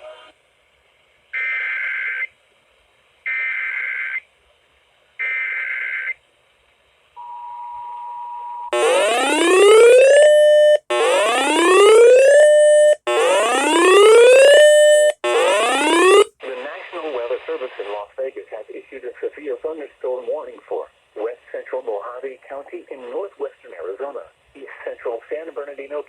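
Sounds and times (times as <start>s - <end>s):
steady attention tone: 8.8s - 16.3s.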